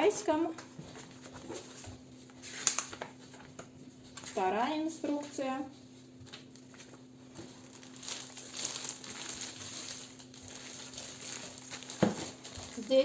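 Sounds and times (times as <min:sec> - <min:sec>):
packaging rustling and crinkling: 0:00.9 - 0:04.4, 0:06.2 - 0:13.0.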